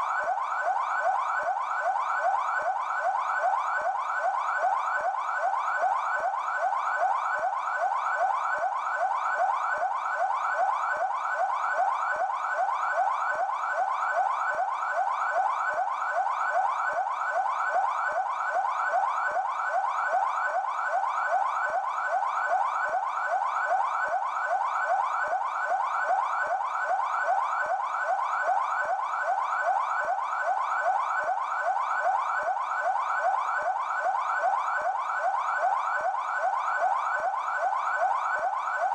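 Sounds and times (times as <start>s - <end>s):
police siren yelp: 0.0s - 38.9s.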